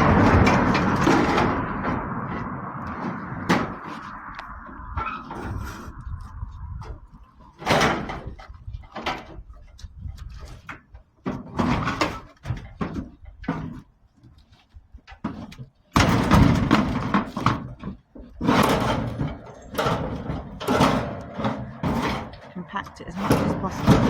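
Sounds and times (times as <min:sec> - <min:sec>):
scrap metal clattering: 0:00.0 - 0:04.2, 0:15.2 - 0:24.0.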